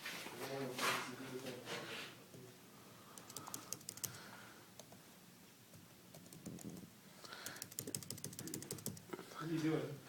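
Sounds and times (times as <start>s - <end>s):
computer keys clicking: 3.2s - 4.2s, 6.1s - 9.2s.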